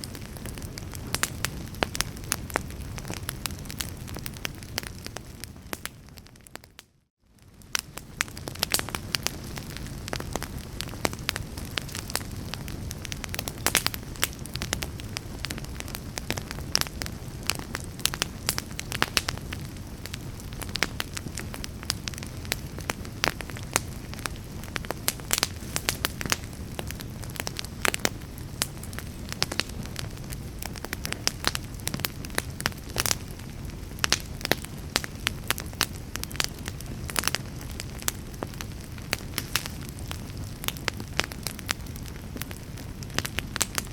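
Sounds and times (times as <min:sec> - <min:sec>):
fire crackling and popping: 0:00.0 - 0:43.9
low rumble of flames: 0:00.0 - 0:43.9.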